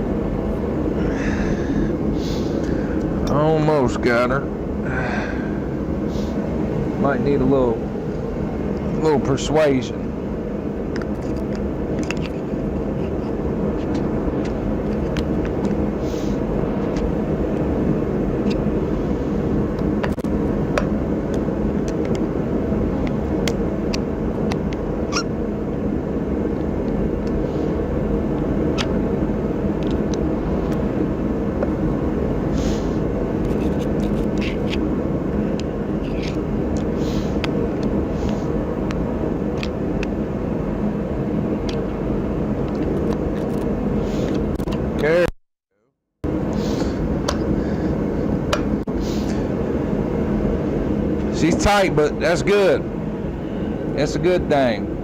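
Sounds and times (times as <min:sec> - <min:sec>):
faint hum: 0:00.0 - 0:45.3, 0:46.2 - 0:55.0.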